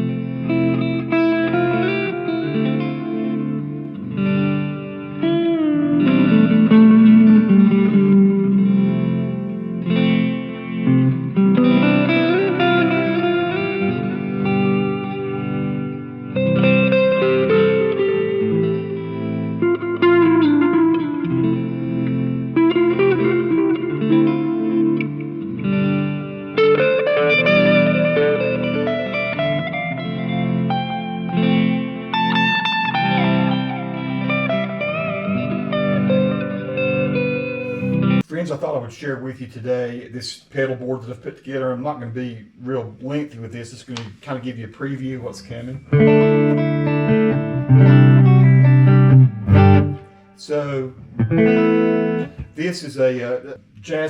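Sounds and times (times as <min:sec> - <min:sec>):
overdriven electric guitar chords: 0:00.0 - 0:38.2, 0:45.8 - 0:52.6.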